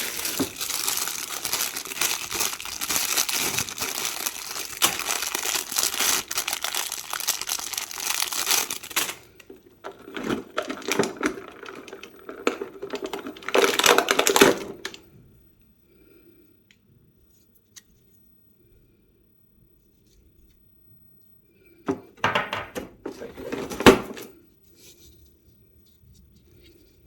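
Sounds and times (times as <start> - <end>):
packaging crinkling: 0.0 - 15.0.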